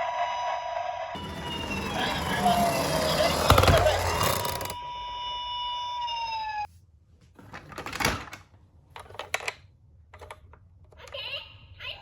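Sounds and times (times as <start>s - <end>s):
toy police siren: 1.2s - 6.7s.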